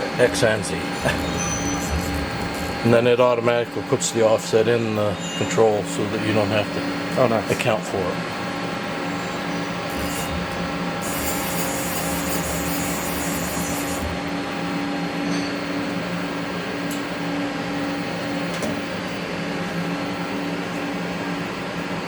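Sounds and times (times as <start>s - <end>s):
lathe machine hum: 0.0s - 4.0s, 8.3s - 14.9s.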